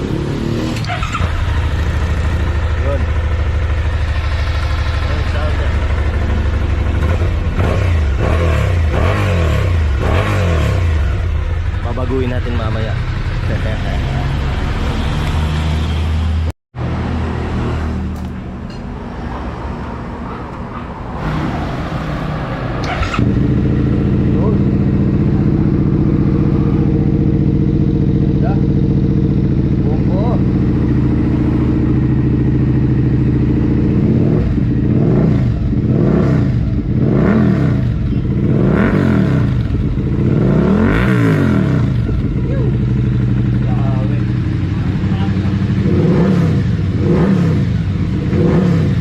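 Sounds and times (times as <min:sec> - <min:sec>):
motorcycle engine idling: 0:00.0 - 0:09.0, 0:10.8 - 0:14.8, 0:23.2 - 0:37.0, 0:37.8 - 0:47.0.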